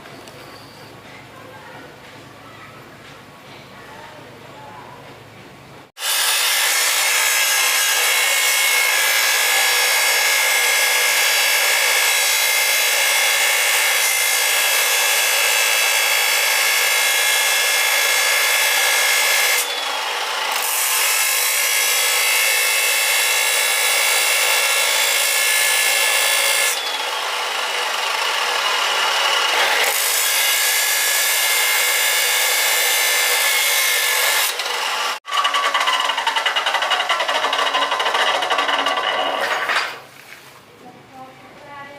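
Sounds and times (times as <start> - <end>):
electric grinder whining: 6.0 - 40.0.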